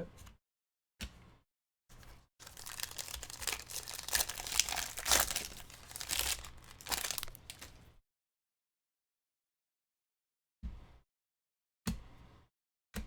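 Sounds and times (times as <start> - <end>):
foil wrapper tearing and crinkling: 2.4 - 7.8.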